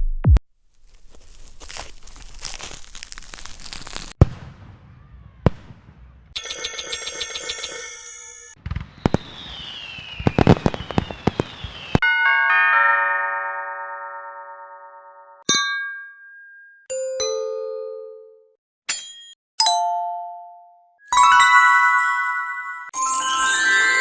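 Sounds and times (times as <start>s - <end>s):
sharp cracks: 2.6s - 4.5s, 8.6s - 12.0s
falling whistle: 8.8s - 12.0s
chime chord: 12.0s - 15.4s, 19.6s - 24.0s
ding-dong doorbell chime: 12.0s - 18.5s, 19.6s - 24.0s.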